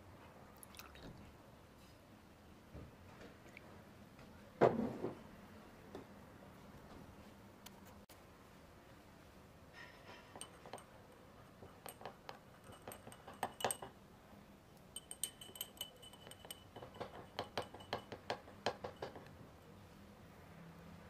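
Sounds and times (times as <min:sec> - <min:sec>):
small hard objects clinking: 0:14.9 - 0:19.1.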